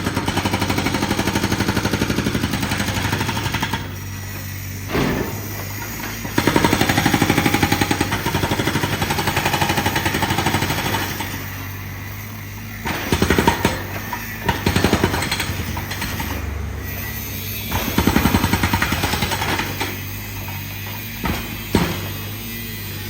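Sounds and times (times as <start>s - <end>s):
jackhammer hammering: 0.0s - 23.0s.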